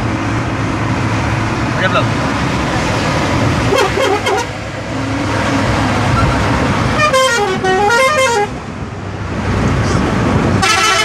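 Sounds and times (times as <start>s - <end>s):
road traffic noise: 0.0s - 11.0s
multi-tone horn melody: 3.7s - 4.6s, 7.0s - 8.6s, 10.6s - 11.0s.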